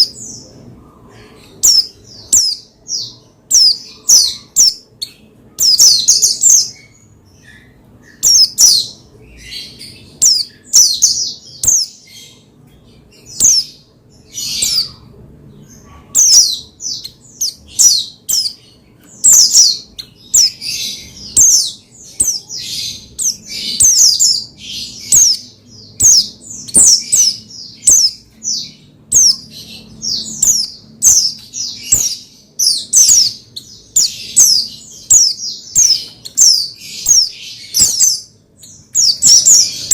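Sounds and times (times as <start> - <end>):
bird chirping song: 0.0 - 39.9.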